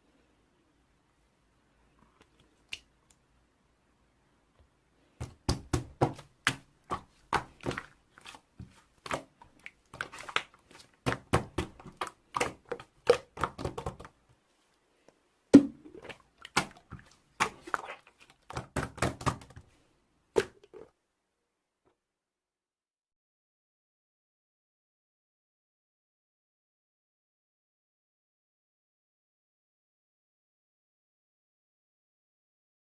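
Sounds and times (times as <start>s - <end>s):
slime clicking and squelching: 5.2s - 14.1s, 15.8s - 19.6s.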